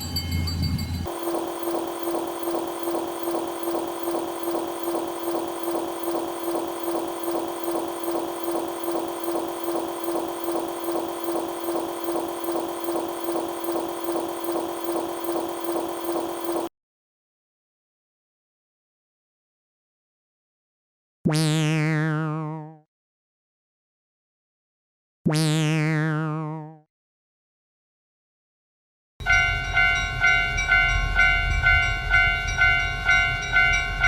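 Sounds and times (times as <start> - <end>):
railroad crossing bell ringing: 0.0 - 3.7, 29.2 - 34.0.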